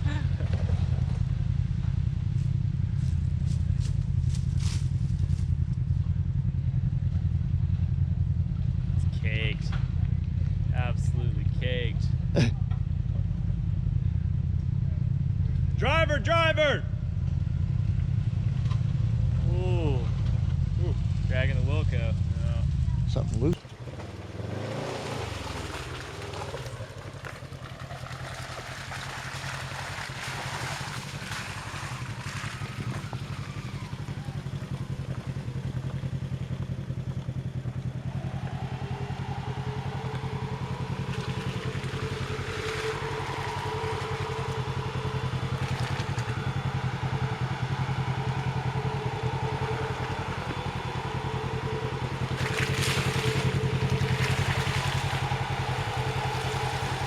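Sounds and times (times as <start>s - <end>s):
off-road vehicle engine running: 0.0s - 57.0s
steady whine: 33.5s - 57.0s.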